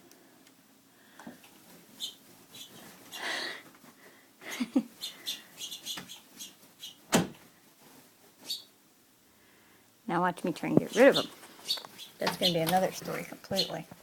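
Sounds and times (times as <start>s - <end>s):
finches chirping: 2.0s - 3.2s, 5.0s - 7.0s, 8.4s - 8.7s, 10.6s - 13.9s.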